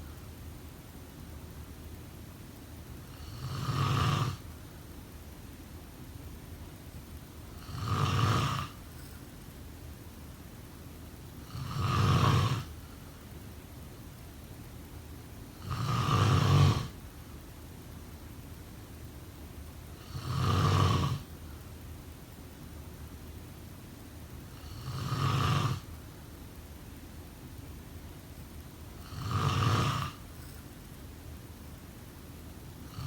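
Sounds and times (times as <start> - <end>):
person snoring: 3.1 - 4.4, 7.6 - 8.8, 11.4 - 12.7, 15.6 - 17.0, 20.0 - 21.3, 24.6 - 25.9, 29.0 - 30.6.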